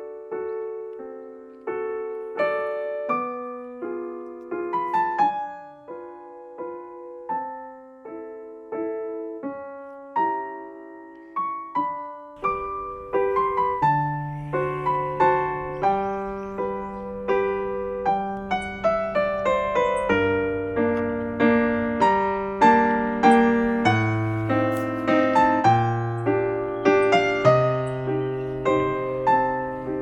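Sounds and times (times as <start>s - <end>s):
slow piano melody: 0.0s - 30.0s.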